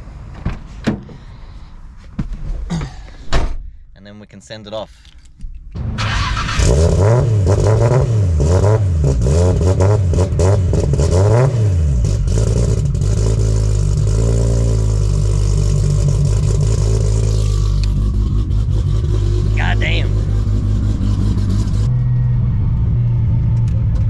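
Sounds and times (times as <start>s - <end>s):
car engine revving and idling: 5.8s - 24.0s.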